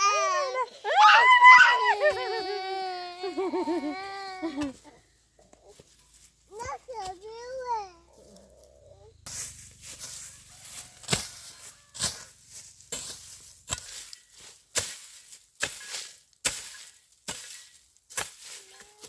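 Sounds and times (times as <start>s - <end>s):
hand tool chopping: 9.3s - 19.0s.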